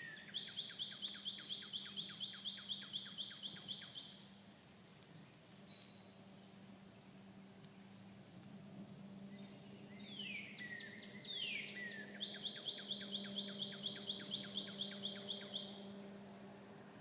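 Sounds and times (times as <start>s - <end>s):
songbird singing: 0.0s - 17.0s
steady low hum: 5.9s - 17.0s.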